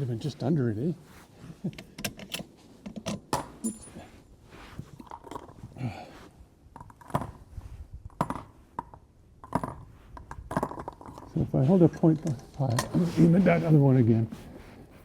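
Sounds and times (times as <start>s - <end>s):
clicks and rattles of rifle handling: 1.5s - 4.2s, 4.8s - 5.7s, 8.1s - 11.4s, 12.0s - 13.1s.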